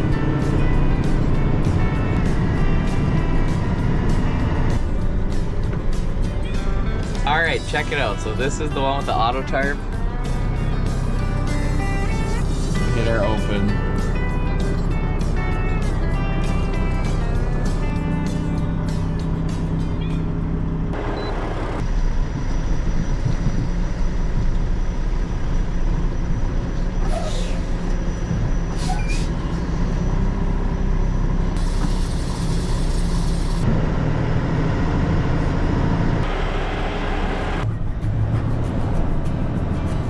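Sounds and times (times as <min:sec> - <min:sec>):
truck diesel engine running: 0:00.0 - 0:40.0
air hissing: 0:31.6 - 0:33.6.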